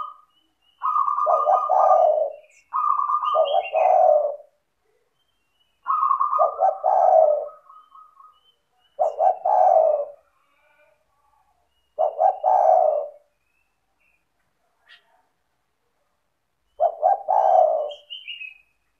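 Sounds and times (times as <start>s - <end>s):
dove cooing: 0.0s - 4.6s, 5.8s - 11.0s, 11.9s - 13.3s, 16.7s - 18.6s.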